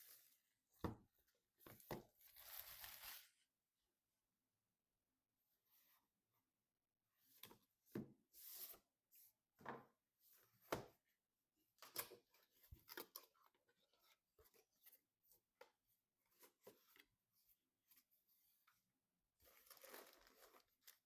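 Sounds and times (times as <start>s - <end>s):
packaging rustling scrapes: 2.2s - 3.4s, 19.5s - 21.0s.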